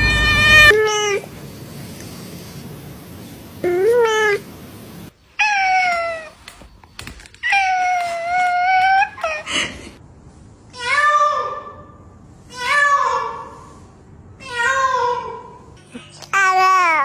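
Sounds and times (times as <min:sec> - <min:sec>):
cats meowing: 0:00.0 - 0:00.8.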